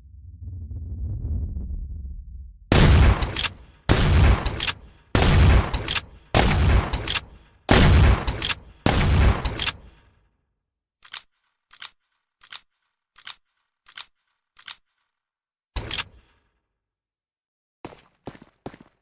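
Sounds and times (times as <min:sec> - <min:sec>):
shotgun shots: 0:02.7 - 0:10.2, 0:15.8 - 0:16.4
sharp clicks: 0:03.0 - 0:07.5, 0:08.1 - 0:10.1, 0:11.0 - 0:15.2, 0:15.8 - 0:16.4.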